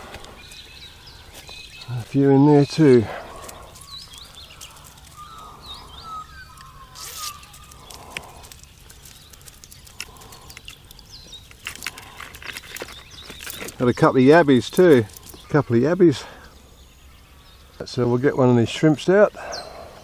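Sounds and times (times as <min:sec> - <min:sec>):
birds chirping: 0:00.0 - 0:20.0
faint outdoor background: 0:00.0 - 0:20.0
small clicks: 0:06.5 - 0:13.8.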